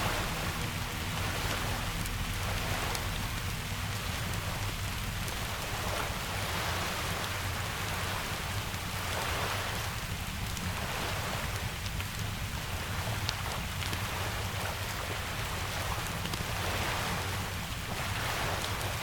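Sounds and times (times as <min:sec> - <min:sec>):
low rumble: 0:00.0 - 0:06.5
heavy rain: 0:00.0 - 0:19.0.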